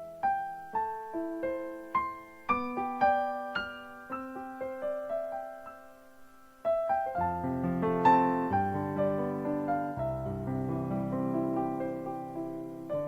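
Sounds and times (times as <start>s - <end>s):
slow piano melody: 0.0s - 13.0s.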